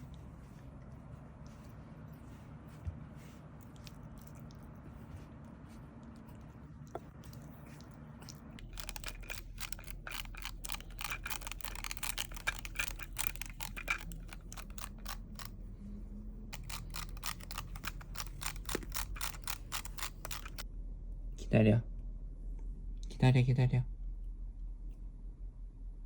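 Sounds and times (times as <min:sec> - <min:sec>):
rapid sharp clicks: 0:16.5 - 0:20.6.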